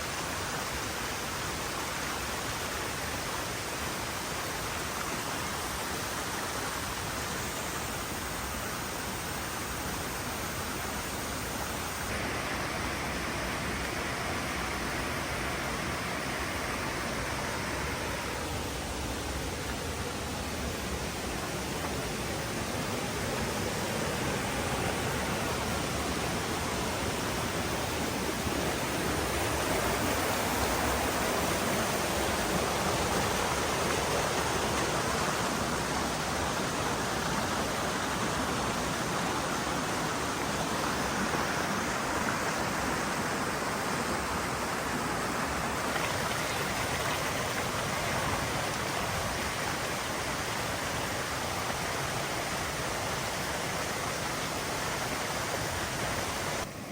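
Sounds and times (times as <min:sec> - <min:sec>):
waterfall rushing: 0:00.0 - 0:56.9.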